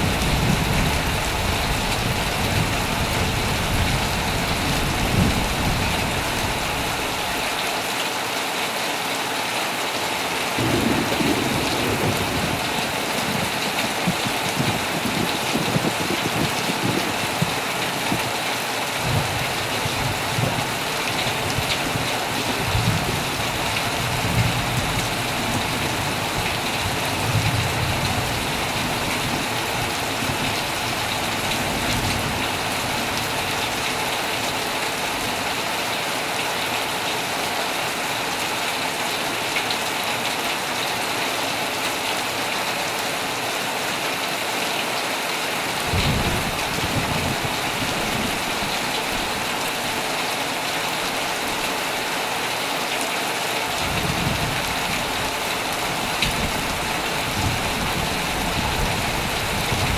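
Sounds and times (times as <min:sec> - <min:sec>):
thunder rolling: 0:00.0 - 0:07.4, 0:10.6 - 0:18.3, 0:45.8 - 0:50.2, 0:53.8 - 0:59.9
heavy rain on a tent: 0:00.0 - 0:59.9.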